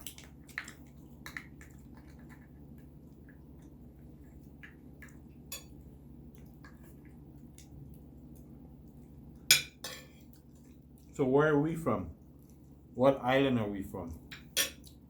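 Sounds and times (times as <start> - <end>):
wet squishes: 0.0 - 5.5, 10.2 - 11.3
steady low hum: 0.0 - 15.0.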